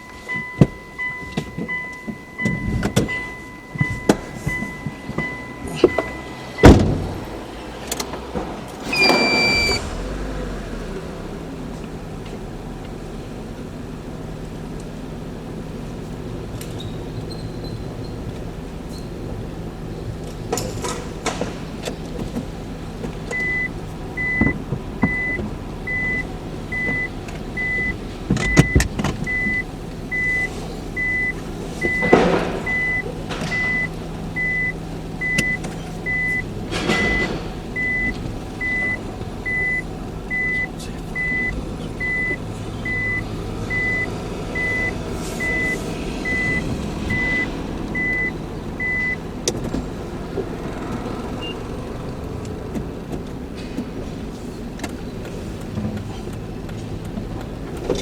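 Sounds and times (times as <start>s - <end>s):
reversing alarm beeping: 0.0s - 6.8s, 8.9s - 10.0s, 23.3s - 49.2s.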